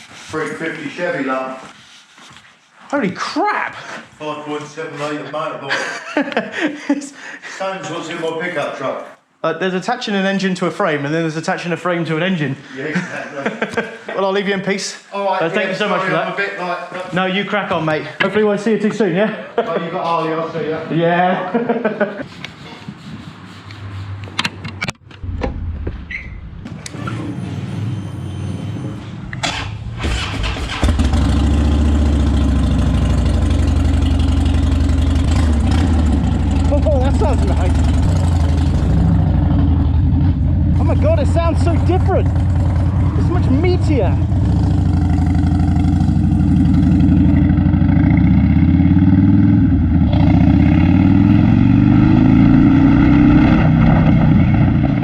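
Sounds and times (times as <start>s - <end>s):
motorcycle engine idling: 31.0s - 40.8s, 41.8s - 43.0s, 44.2s - 48.2s.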